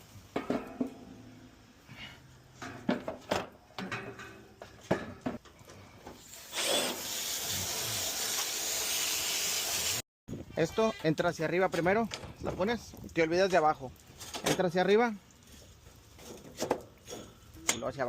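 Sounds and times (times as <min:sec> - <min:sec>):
gas hissing out: 0:06.1 - 0:10.0.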